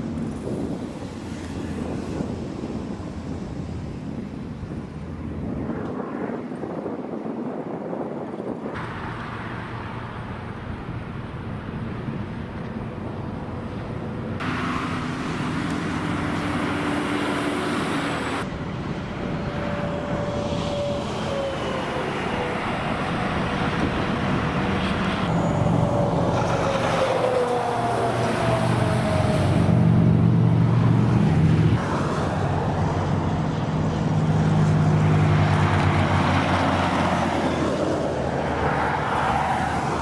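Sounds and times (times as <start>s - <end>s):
vehicles passing by: 8.8s - 40.0s.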